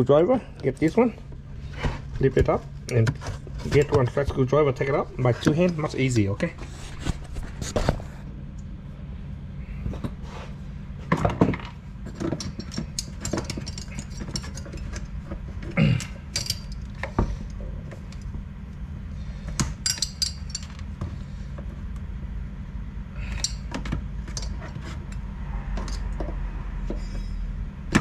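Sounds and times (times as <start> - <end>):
steady low hum: 0.0 - 28.0
metal tools clicking and scraping: 12.0 - 15.3, 16.0 - 18.3, 19.6 - 20.9, 23.2 - 27.5
metal parts clattering: 12.1 - 15.1, 16.0 - 17.1, 19.8 - 20.9.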